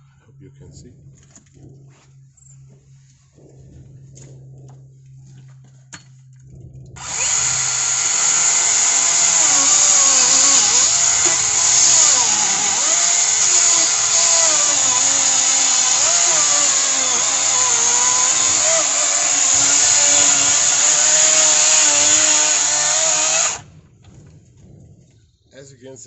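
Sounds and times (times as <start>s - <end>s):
chainsaw cutting wood: 7.0s - 23.7s.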